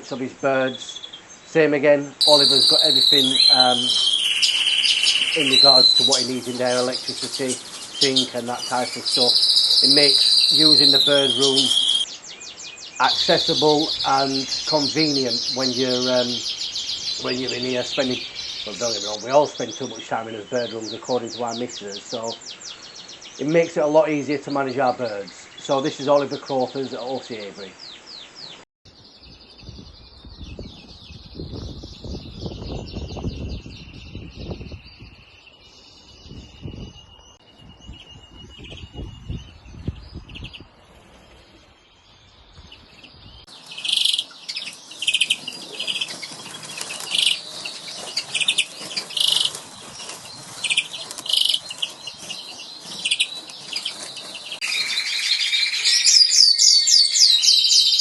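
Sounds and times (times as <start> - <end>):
fast loud bird song: 0.0 - 58.0
small birds chirping: 0.0 - 58.0.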